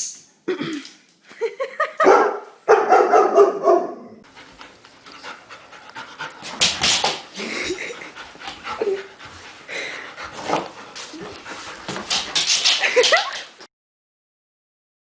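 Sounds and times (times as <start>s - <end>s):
dog panting: 4.3s - 12.8s.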